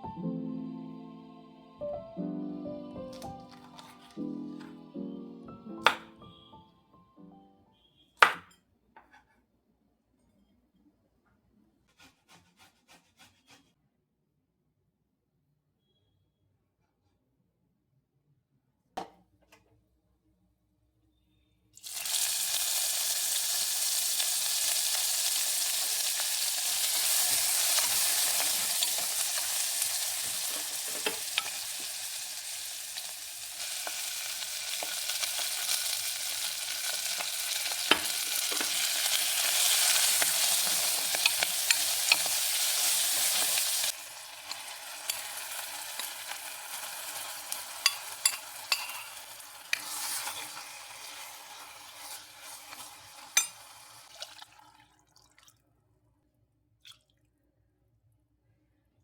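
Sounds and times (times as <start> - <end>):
food sizzling in hot oil: 5.8 - 6.2, 21.8 - 54.3.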